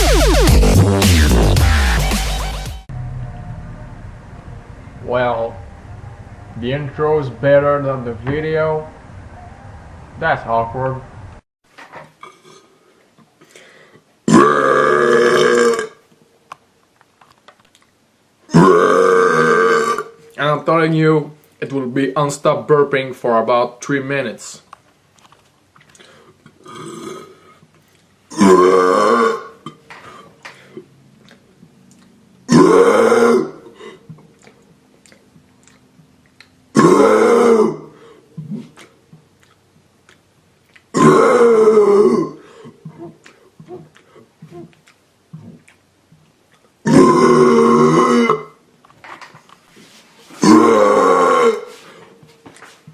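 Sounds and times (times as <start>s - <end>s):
man burping: 12.2s - 12.8s, 14.2s - 16.0s, 18.5s - 20.2s, 26.5s - 27.6s, 28.3s - 30.3s, 32.5s - 34.1s, 36.7s - 38.7s, 40.9s - 43.9s, 46.8s - 48.6s, 50.4s - 51.8s
faint small sounds: 15.9s - 18.5s.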